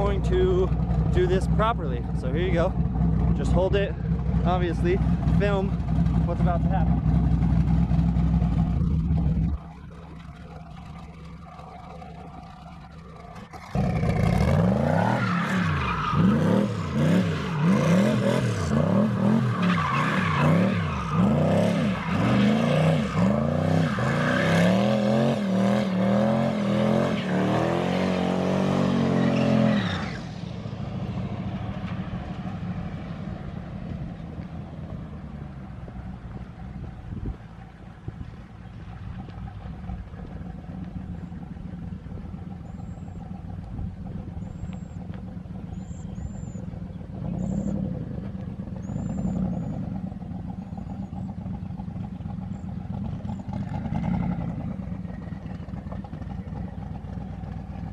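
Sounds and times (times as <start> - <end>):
engine revving hard: 13.6 - 30.2.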